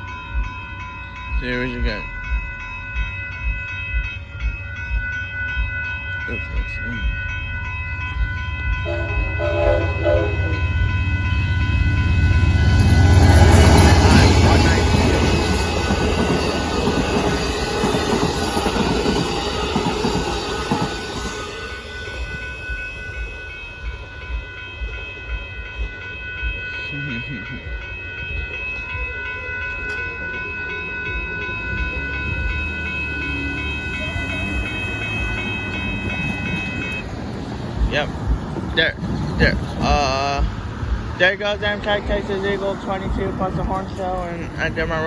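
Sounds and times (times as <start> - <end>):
several-note ringing tone: 0.0 - 37.2
passenger train passing: 0.0 - 45.0
rail noise: 0.0 - 45.0.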